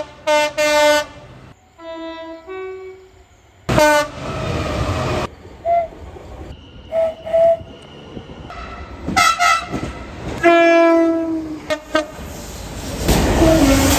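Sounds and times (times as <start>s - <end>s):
train horn toots: 0.0s - 1.2s, 1.8s - 3.1s, 3.7s - 4.3s, 6.9s - 7.8s, 8.5s - 12.2s, 13.2s - 13.9s.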